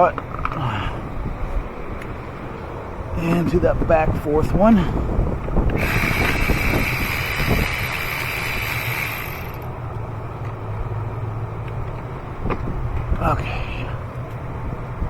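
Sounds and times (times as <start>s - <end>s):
electric ratchet whining: 5.7s - 9.8s.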